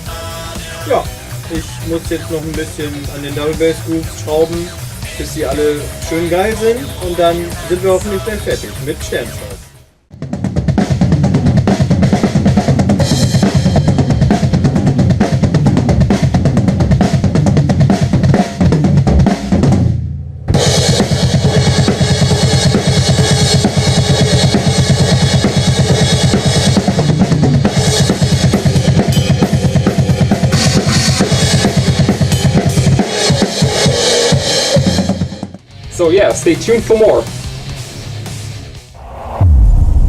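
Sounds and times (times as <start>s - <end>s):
metal drum kit playing: 0.0s - 38.8s.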